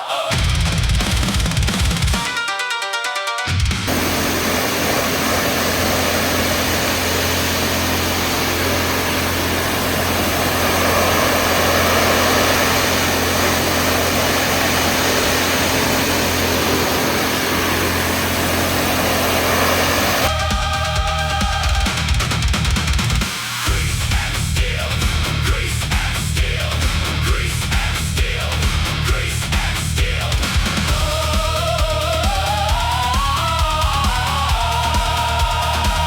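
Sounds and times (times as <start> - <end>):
water jet hissing: 3.9 - 20.3
pressure washer motor hum: 3.9 - 22.1.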